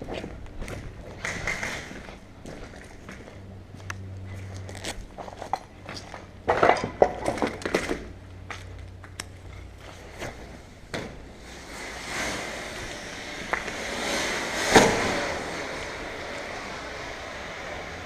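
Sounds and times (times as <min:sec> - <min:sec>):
crunching and rustling: 0:00.0 - 0:10.7.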